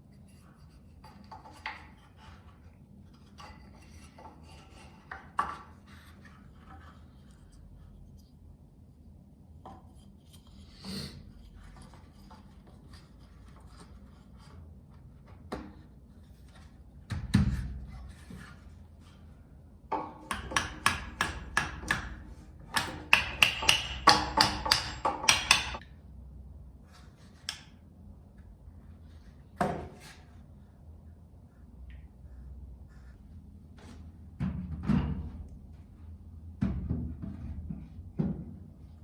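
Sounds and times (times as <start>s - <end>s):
hammering on wood: 19.9s - 25.8s.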